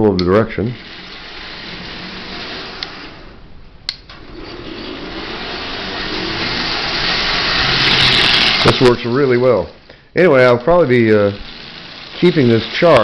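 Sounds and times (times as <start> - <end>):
toy train motor whirring: 0.7 - 3.4, 4.4 - 9.8, 10.4 - 13.0
wheels rattling on metal track: 4.1 - 9.7, 10.4 - 13.0.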